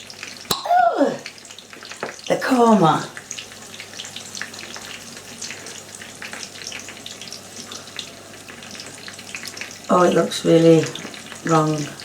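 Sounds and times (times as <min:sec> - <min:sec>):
chicken sizzling in a hot pan: 0:00.0 - 0:12.0.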